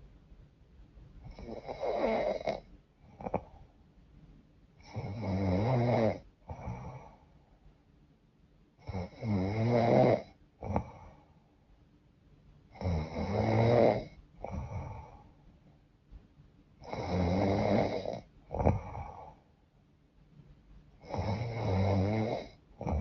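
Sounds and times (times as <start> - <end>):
woman snoring: 1.3 - 3.6, 4.8 - 7.2, 8.8 - 11.0, 12.8 - 15.2, 16.8 - 19.4, 21.0 - 23.0.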